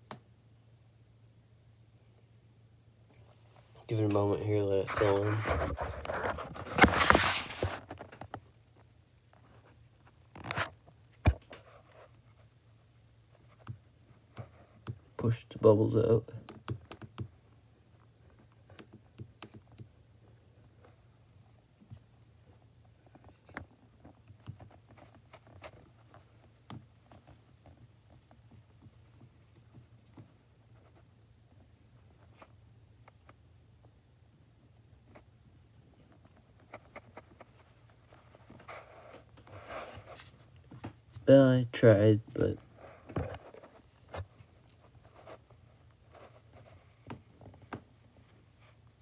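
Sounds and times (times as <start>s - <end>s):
screen protector rubbing scrape: 4.9s - 7.8s.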